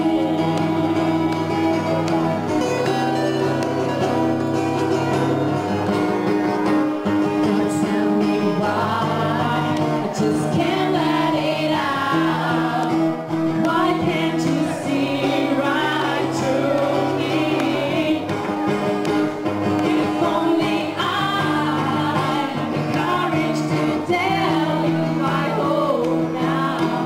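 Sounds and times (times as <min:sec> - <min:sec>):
person singing: 0:00.0 - 0:02.0, 0:07.3 - 0:13.0, 0:13.6 - 0:18.8, 0:19.6 - 0:27.0
acoustic guitar: 0:00.0 - 0:27.0.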